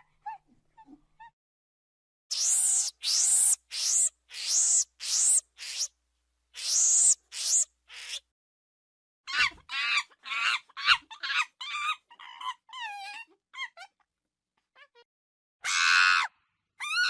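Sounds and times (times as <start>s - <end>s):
monkey shrieks and chattering: 2.3s - 5.9s, 6.6s - 8.3s, 9.3s - 14.0s, 16.8s - 17.0s.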